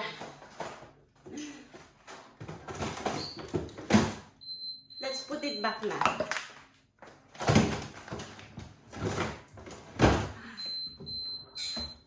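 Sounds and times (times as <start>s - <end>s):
fridge door alarm tone: 4.3s - 6.4s, 10.4s - 12.0s.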